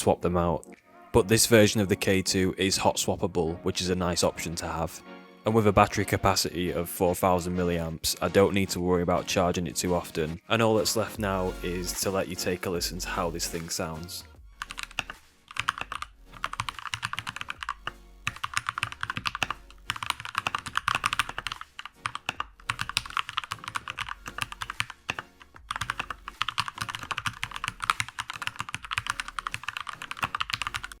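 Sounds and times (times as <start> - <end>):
mechanical keyboard typing: 14.6 - 31.0.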